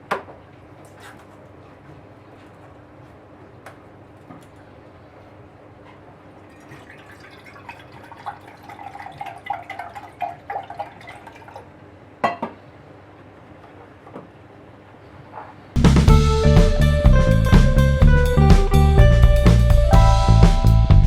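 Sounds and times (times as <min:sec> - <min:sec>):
liquid dripping into a glass: 0:06.6 - 0:11.6.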